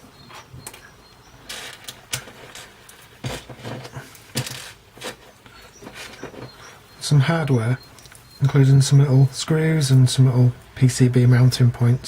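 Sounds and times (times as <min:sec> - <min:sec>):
light clicks taps and rustles: 0:00.2 - 0:06.8.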